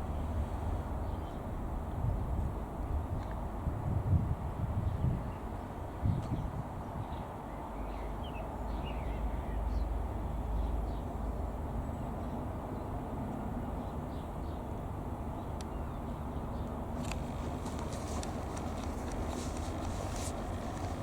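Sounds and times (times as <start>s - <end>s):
propeller plane droning overhead: 6.6s - 21.0s
small birds chirping: 15.3s - 21.0s.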